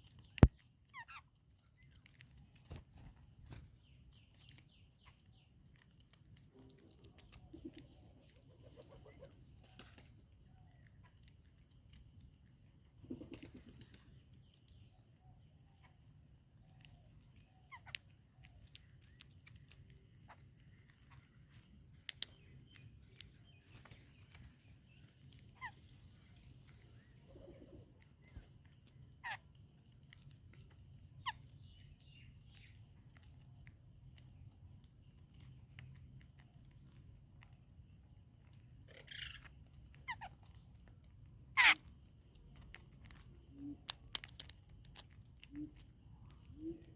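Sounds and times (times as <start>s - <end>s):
bird chirps: 13.0s - 34.5s, 38.4s - 40.8s, 41.6s - 44.2s.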